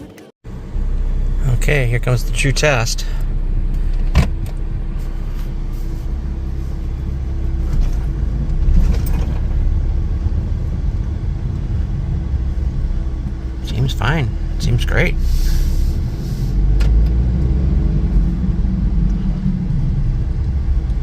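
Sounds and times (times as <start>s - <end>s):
car engine and road rumble: 0.0s - 21.0s.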